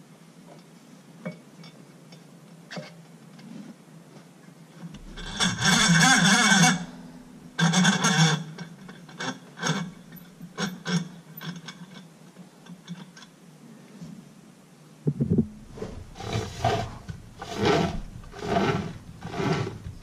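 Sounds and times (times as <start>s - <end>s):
power tool whirring: 16.0s - 20.0s.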